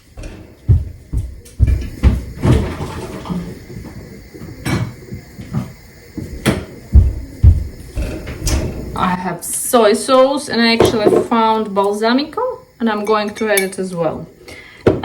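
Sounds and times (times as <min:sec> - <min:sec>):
cupboard doors opening and closing: 0:00.0 - 0:09.2
things moved about in cupboard: 0:00.0 - 0:09.2.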